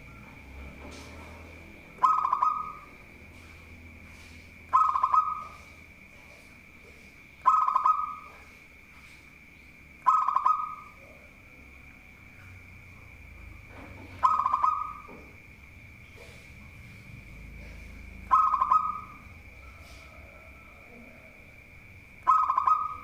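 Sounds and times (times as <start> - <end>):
dove cooing: 0.0 - 8.6, 10.0 - 11.4, 13.4 - 15.4, 16.0 - 23.0.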